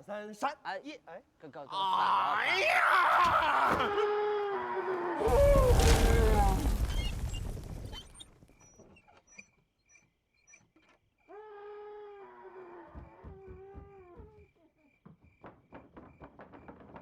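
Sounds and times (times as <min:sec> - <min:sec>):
loud crash with rumble: 0:05.2 - 0:08.2.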